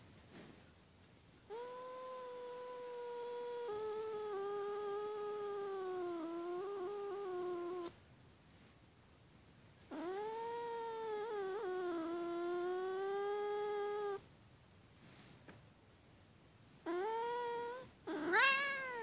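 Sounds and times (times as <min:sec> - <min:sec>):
cat yowling angrily: 0:16.9 - 0:19.0.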